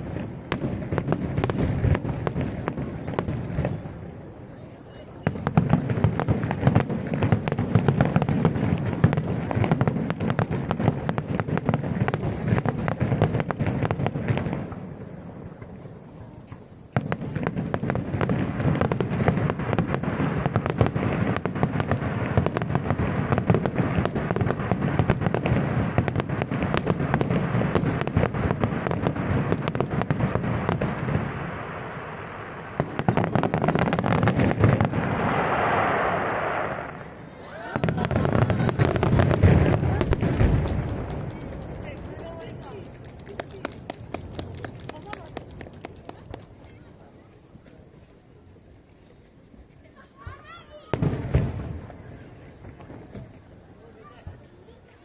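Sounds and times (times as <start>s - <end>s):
fireworks bursting and crackling: 0.0s - 55.0s
loud firework bang: 17.0s - 41.3s, 50.9s - 53.3s.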